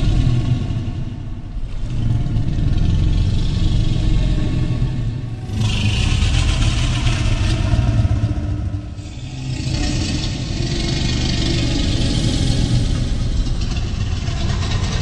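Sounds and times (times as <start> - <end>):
deep continuous rumble: 0.0 - 15.0
harsh rasping roar: 5.4 - 15.0.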